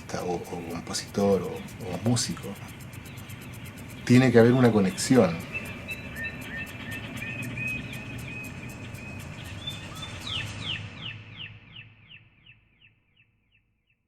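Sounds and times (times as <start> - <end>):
bird chirping: 0.0 - 14.0.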